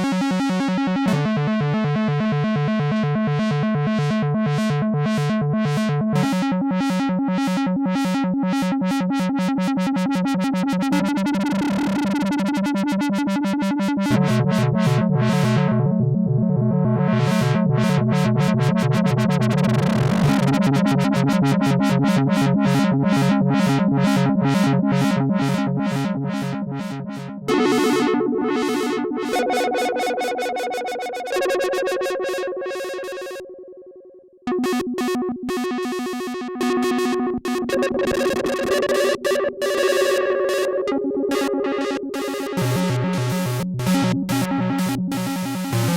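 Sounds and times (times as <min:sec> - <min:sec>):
synthesizer playing pulsing chords: 0:00.0 - 0:45.9.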